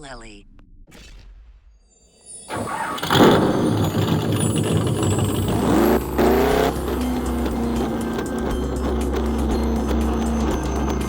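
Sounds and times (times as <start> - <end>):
background music: 2.3 - 11.0
car engine revving: 2.5 - 11.0.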